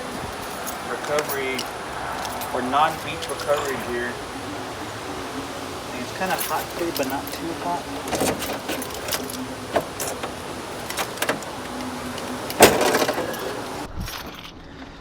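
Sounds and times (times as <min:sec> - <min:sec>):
gear knocking and clinking: 0:00.0 - 0:13.9
metal clank: 0:06.0 - 0:13.9.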